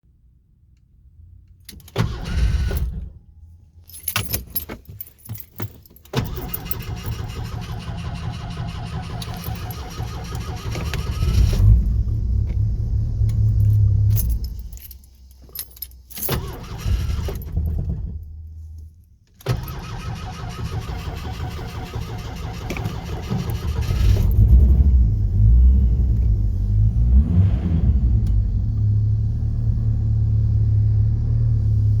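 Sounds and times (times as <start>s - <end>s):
engine cranking: 1.8s - 3.0s, 4.3s - 12.6s, 16.2s - 18.2s, 19.4s - 24.7s
keys jangling: 3.8s - 7.2s, 9.2s - 10.0s, 13.3s - 17.6s.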